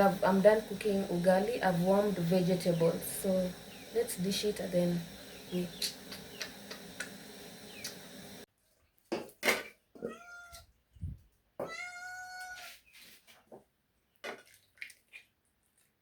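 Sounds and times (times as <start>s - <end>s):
cat meowing: 10.0s - 10.8s, 11.6s - 12.8s.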